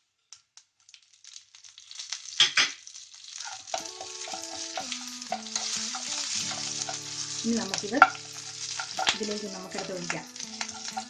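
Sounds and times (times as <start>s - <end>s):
oil crackling and sizzling: 0.0s - 11.0s
sharp pops of frying oil: 0.3s - 11.0s.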